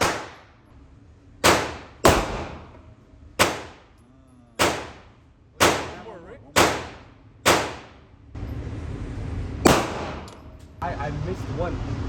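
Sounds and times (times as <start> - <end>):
gunshots with short echo: 0.0 - 0.6, 1.4 - 2.8, 3.4 - 3.9, 4.6 - 8.0, 9.7 - 10.3.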